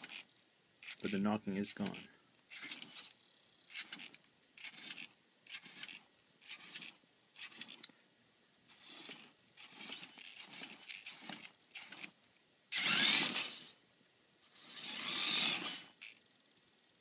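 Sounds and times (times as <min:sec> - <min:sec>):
electric motor bursts: 0:00.8 - 0:03.1, 0:03.7 - 0:07.8, 0:08.7 - 0:12.1, 0:12.7 - 0:13.8, 0:14.4 - 0:16.3
drivetrain and tyre noise: 0:12.7 - 0:13.7, 0:14.5 - 0:16.4.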